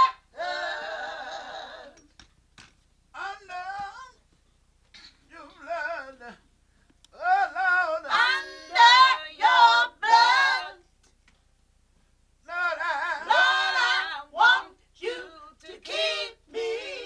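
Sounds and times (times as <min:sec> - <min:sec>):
person singing gospel unaccompanied: 0:00.0 - 0:02.2, 0:03.1 - 0:04.4, 0:05.3 - 0:10.9, 0:12.4 - 0:17.0.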